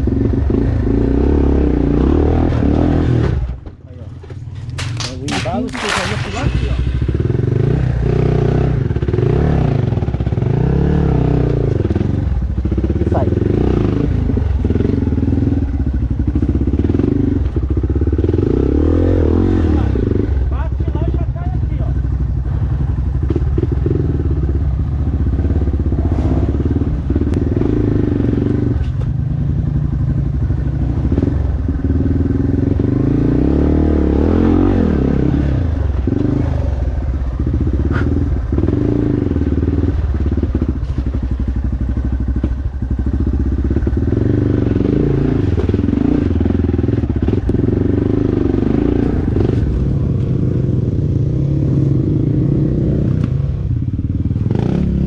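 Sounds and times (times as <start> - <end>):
dirt bike engine revving: 0.0 - 3.6, 4.4 - 21.1, 22.6 - 29.0, 30.8 - 40.9, 43.0 - 55.0
clattering knocks from rough ground: 2.5 - 7.2.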